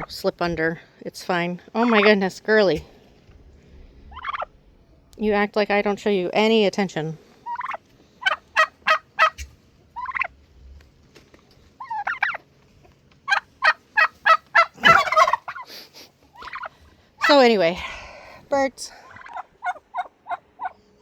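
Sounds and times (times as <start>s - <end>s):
turkeys calling: 1.8s - 2.8s, 4.1s - 4.5s, 7.4s - 10.3s, 11.8s - 12.5s, 13.2s - 18.0s, 18.9s - 20.8s.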